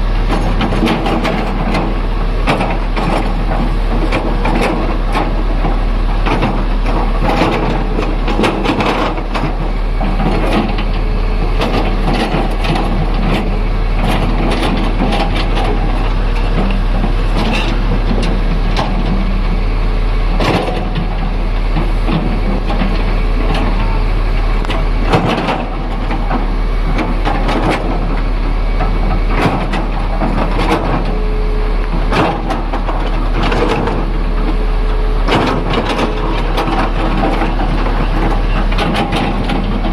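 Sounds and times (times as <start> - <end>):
excavator diesel engine running: 0.0 - 39.9
knocks and clatter: 0.3 - 19.2, 20.4 - 21.2, 24.6 - 28.2, 31.9 - 34.1, 35.3 - 39.9.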